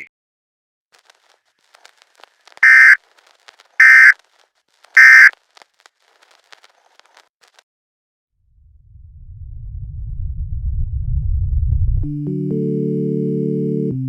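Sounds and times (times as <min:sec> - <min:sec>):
faint crackling clicks: 0:01.0 - 0:07.6
buzzing digital data tones: 0:02.6 - 0:03.0, 0:03.8 - 0:04.2, 0:05.0 - 0:05.3.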